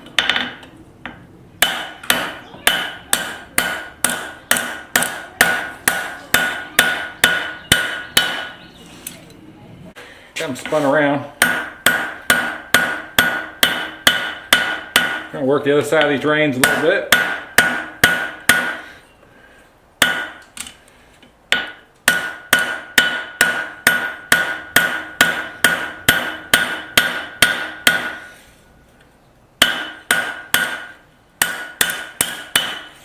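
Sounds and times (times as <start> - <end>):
hammer striking steel on anvil: 0.1 - 8.6, 11.4 - 18.9, 20.0 - 20.5, 21.5 - 28.3, 29.6 - 33.0.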